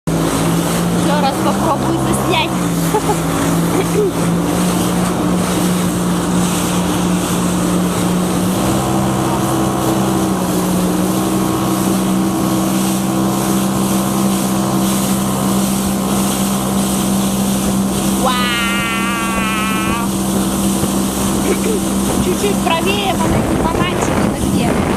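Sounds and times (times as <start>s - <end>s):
jet ski engine running: 0.0s - 24.9s
water rushing: 0.0s - 24.9s
wind noise: 19.0s - 24.9s.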